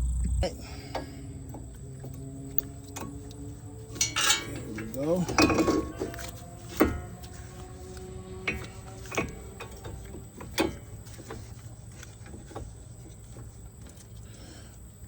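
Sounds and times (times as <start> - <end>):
steady low hum: 0.0 - 15.0
metal tools clinking: 0.8 - 14.1.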